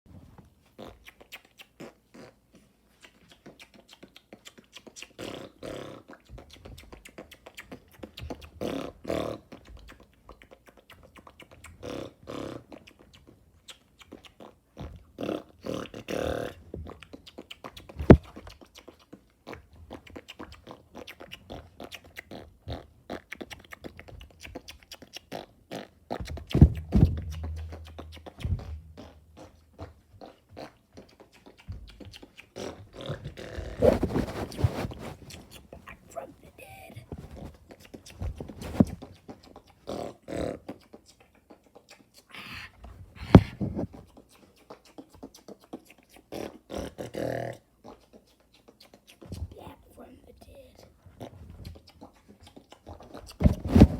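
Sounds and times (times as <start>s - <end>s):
tongue and lip clicks: 0.6s - 53.9s
rasping mouth bursts: 14.1s - 41.0s, 41.8s - 53.9s.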